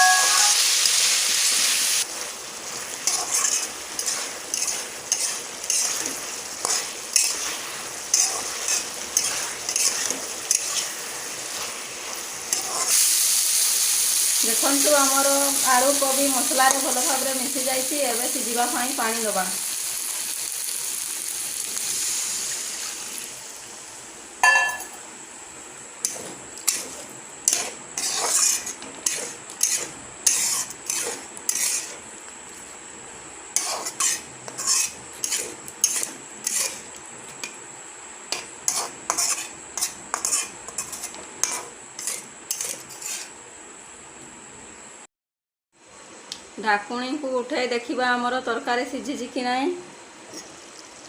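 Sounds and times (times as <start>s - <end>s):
curry sizzling in a hot pan: 0.0s - 37.6s, 38.2s - 43.4s
spoon stirring in a pan: 2.1s - 13.1s, 26.0s - 32.8s, 33.5s - 37.6s, 38.3s - 43.4s
ringing metal clang: 24.4s - 24.9s.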